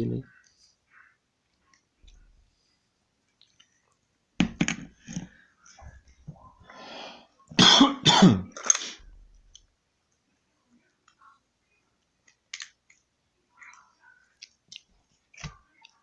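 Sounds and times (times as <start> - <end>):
person coughing: 7.6 - 8.9.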